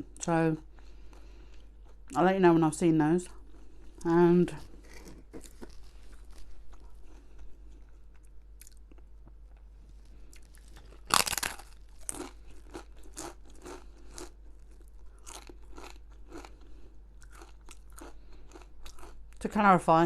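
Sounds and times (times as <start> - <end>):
person chewing crunchy food: 0.7 - 2.2, 3.3 - 19.4
loud crunching bite: 10.3 - 19.2.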